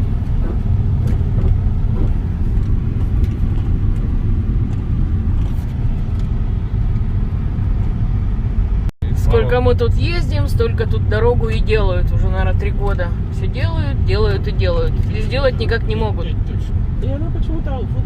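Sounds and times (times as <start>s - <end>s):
car engine and tyre rumble: 0.0s - 18.0s.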